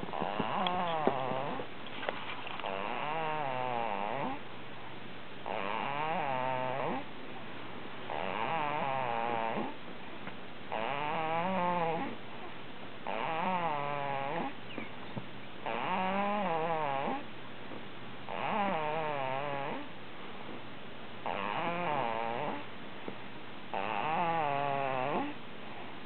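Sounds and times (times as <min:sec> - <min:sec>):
person snoring: 0:00.1 - 0:01.7, 0:02.6 - 0:04.4, 0:05.5 - 0:07.0, 0:08.1 - 0:09.8, 0:15.7 - 0:17.2, 0:18.3 - 0:19.9, 0:21.2 - 0:22.6, 0:23.7 - 0:25.4.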